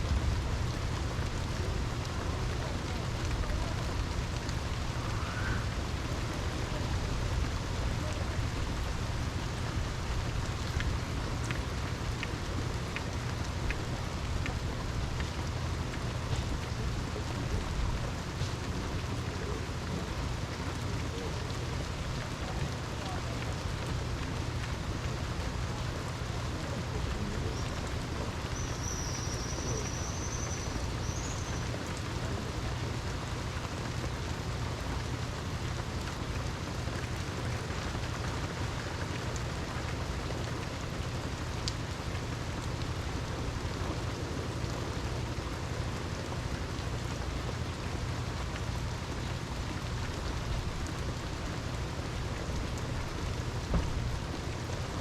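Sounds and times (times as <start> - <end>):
steady rain hiss: 0.0 - 55.0
water drip: 0.0 - 55.0.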